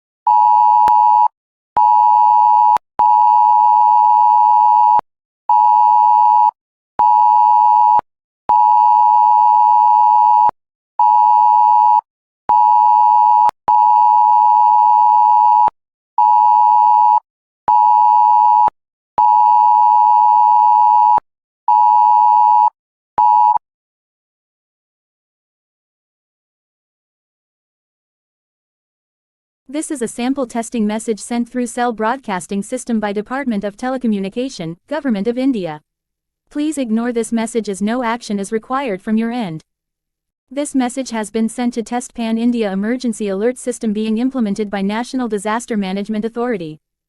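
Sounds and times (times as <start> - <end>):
phone emergency alert beeps: 0.3 - 23.6.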